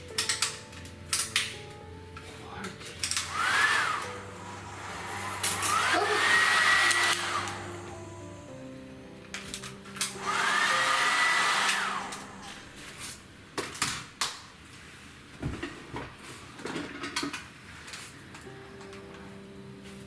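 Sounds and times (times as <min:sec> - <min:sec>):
dryer blower whoosh and whine: 0:03.1 - 0:08.6, 0:10.0 - 0:13.0.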